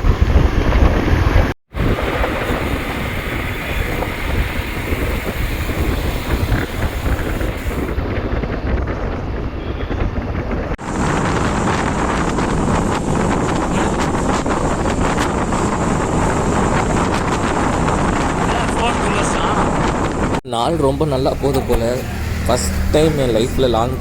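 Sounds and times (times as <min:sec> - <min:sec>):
motorcycle engine: 0:00.0 - 0:09.9, 0:20.2 - 0:24.0
road noise: 0:00.0 - 0:24.0
wind rushing over microphone: 0:00.0 - 0:24.0.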